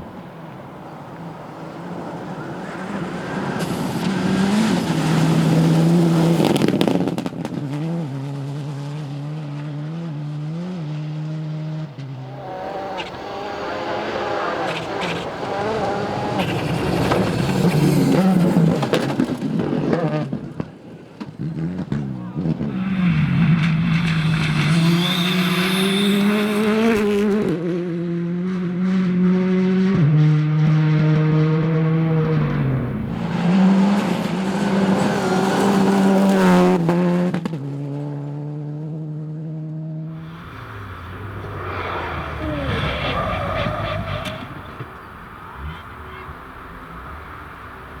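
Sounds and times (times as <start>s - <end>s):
rally car engine passing: 0.0s - 48.0s
sharp cracks: 22.7s - 26.9s.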